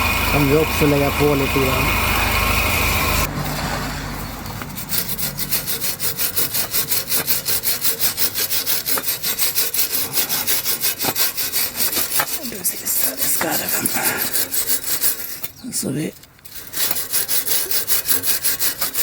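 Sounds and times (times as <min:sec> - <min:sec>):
car engine idling: 0:00.0 - 0:06.5
scrubbing exhaust pipe by hand: 0:00.0 - 0:19.0.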